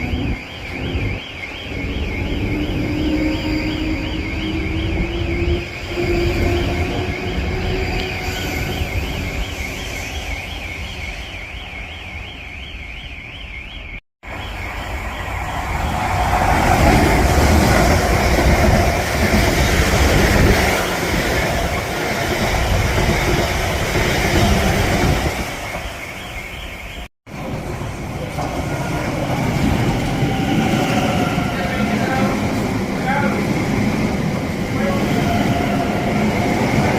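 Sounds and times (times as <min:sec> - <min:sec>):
train wheels rumbling on rails: 0:14.6 - 0:26.1, 0:27.3 - 0:36.9.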